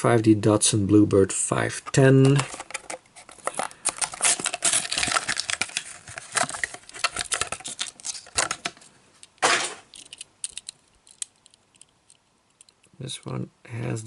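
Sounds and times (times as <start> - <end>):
plastic packaging crinkling: 1.9 - 12.7
packaging tearing: 2.3 - 8.8.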